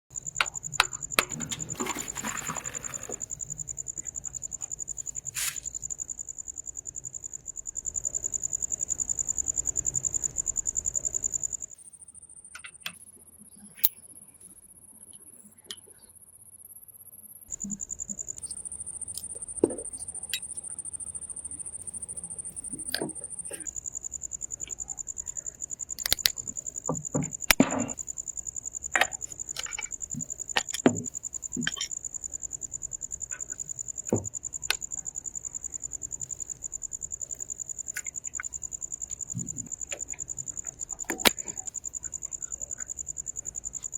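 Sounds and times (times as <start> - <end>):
insects chirping trill: 0.1 - 43.9
sharp clicks and knocks: 0.4 - 2.0, 26.0 - 28.0, 28.9 - 32.0, 39.1 - 41.8.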